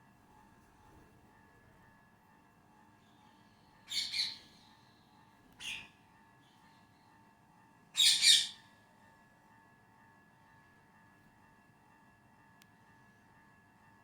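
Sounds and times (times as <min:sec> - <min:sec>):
parrots squawking: 0:08.0 - 0:08.5.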